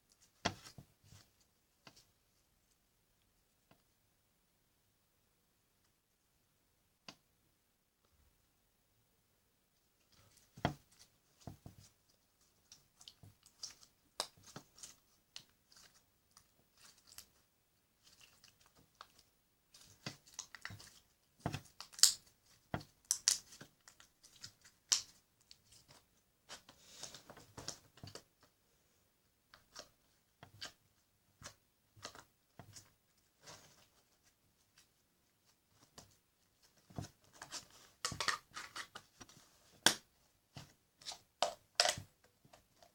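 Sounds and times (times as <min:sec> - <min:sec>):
slime popping and crackling: 0:18.0 - 0:25.2, 0:41.4 - 0:42.0.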